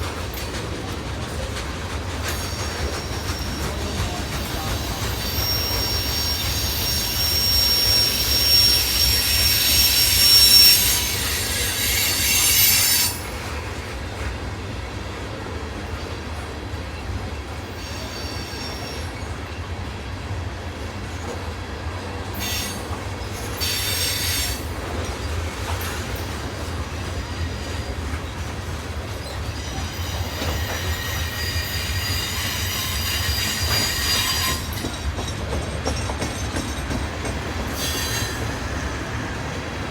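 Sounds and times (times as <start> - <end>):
train cars rolling rumble: 0.0 - 39.9
high-pitched wheel squeal: 4.6 - 13.3, 29.2 - 34.9, 37.7 - 39.1.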